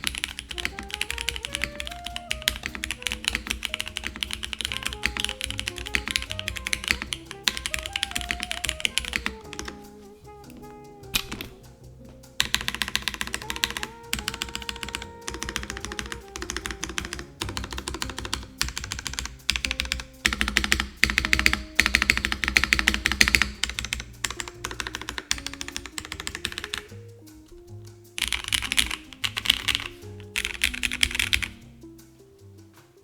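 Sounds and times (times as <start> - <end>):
fast typing on mechanical keyboard: 0.0 - 10.0, 11.1 - 11.6, 12.4 - 27.0, 28.2 - 31.6
background music: 0.0 - 33.0.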